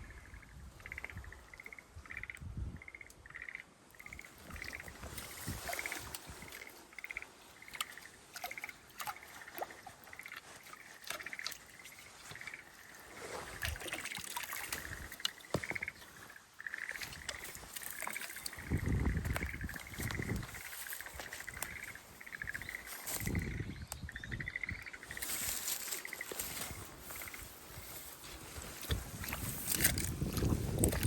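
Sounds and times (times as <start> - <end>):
frogs croaking: 0.0 - 31.0
water trickling: 4.0 - 23.5, 25.1 - 31.0.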